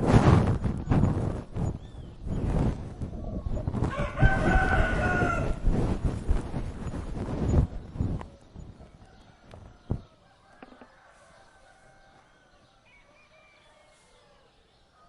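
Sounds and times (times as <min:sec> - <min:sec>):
distant roosters and fowl calling: 0:00.0 - 0:15.0
rooster crowing: 0:03.8 - 0:05.7, 0:09.1 - 0:15.0.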